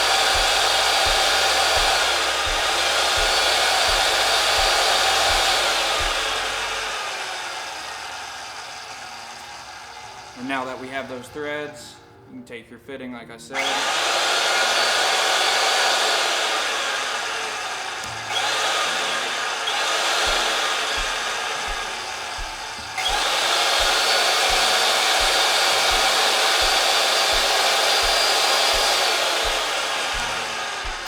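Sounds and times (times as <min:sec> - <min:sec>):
low thumps: 0:00.0 - 0:07.0, 0:20.1 - 0:31.0
pipe-threading machine motor whining: 0:00.0 - 0:11.4, 0:13.6 - 0:31.0.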